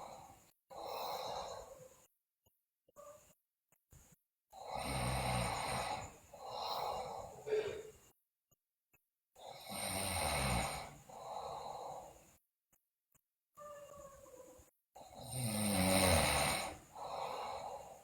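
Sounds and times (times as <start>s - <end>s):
girl snoring loudly: 0.0s - 2.0s, 4.6s - 7.8s, 9.4s - 12.2s, 15.0s - 18.0s.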